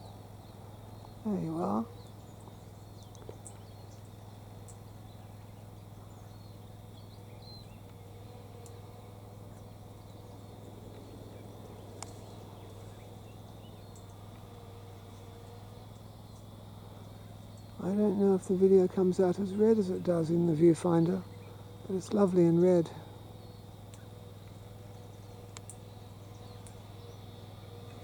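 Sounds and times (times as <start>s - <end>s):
faint wavering drone: 0.0s - 28.0s
steady low hum: 0.0s - 28.0s
faint sharp ticks: 3.0s - 4.8s, 8.6s - 8.8s, 10.9s - 12.8s, 25.5s - 25.9s.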